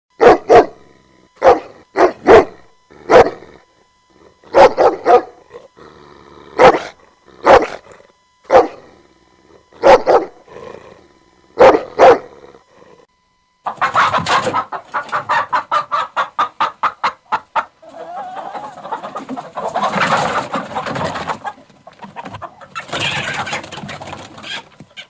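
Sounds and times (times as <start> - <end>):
dog barking: 0.2 - 0.8, 1.4 - 3.5, 4.5 - 5.4, 6.6 - 7.8, 8.5 - 8.9, 9.8 - 10.4, 11.6 - 12.4.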